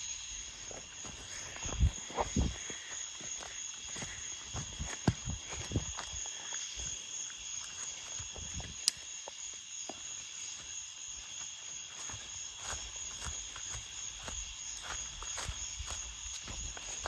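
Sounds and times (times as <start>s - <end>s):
insects trilling: 0.0s - 17.0s.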